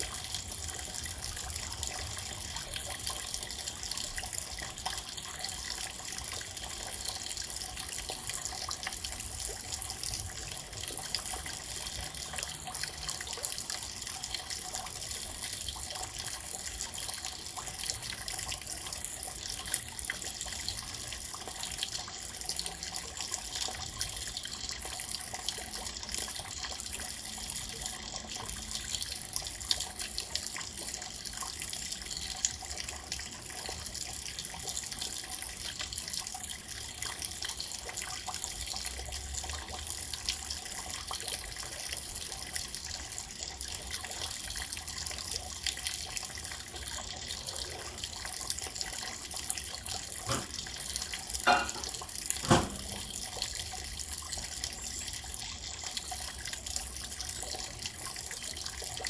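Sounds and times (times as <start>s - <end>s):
sharp knocks or drips: 49.8s - 53.4s.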